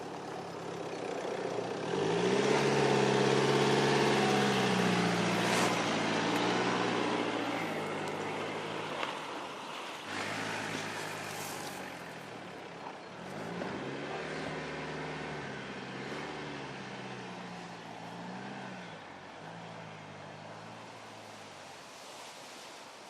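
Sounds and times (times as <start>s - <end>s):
diesel car engine running: 0.0s - 9.4s.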